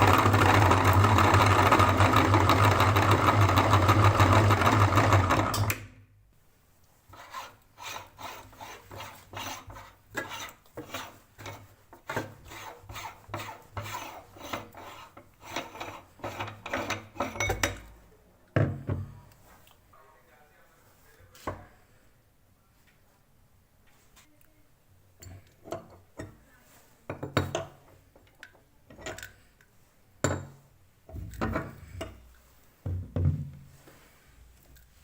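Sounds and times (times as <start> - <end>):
meat grinder motor running: 0.0 - 5.7.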